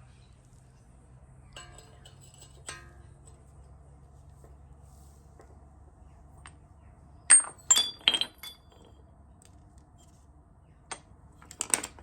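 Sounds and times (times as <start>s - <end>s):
metal parts clinking: 1.6s - 3.4s, 7.3s - 8.9s, 11.4s - 12.0s.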